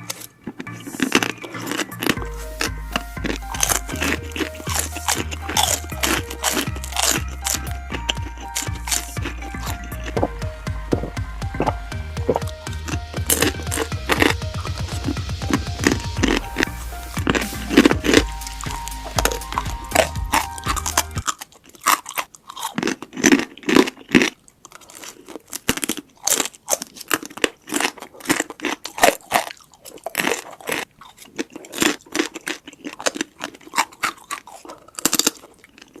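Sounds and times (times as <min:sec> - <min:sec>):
background music: 0:00.0 - 0:21.3
crunchy chewing: 0:00.0 - 0:36.0.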